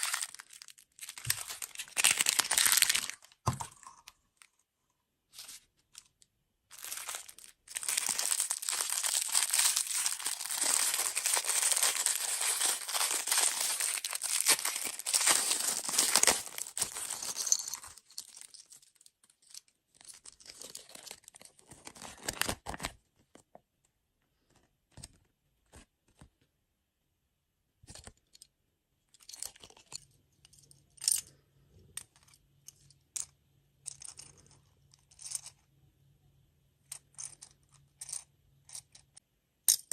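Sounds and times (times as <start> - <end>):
packaging being torn and crinkled: 0.0 - 3.4, 6.7 - 19.0, 20.4 - 22.9.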